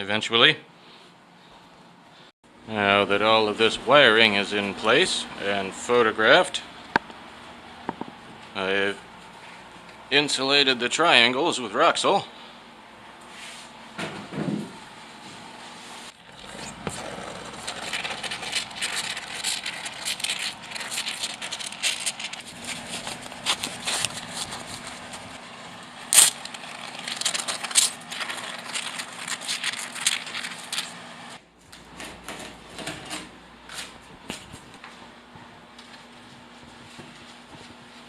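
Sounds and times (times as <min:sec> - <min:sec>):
dense crackling and rustling: 0:16.1 - 0:31.4.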